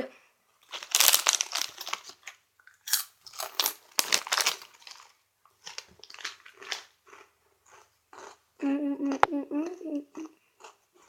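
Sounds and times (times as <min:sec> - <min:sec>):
crunchy snack chewing: 0:00.6 - 0:08.4.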